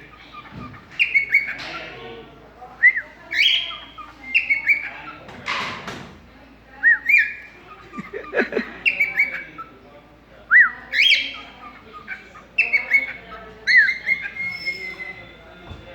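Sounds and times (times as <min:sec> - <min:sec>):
cockatiel whistling and chirping: 0:00.4 - 0:01.8, 0:02.8 - 0:04.9, 0:06.9 - 0:07.4, 0:10.6 - 0:11.6, 0:12.6 - 0:15.4.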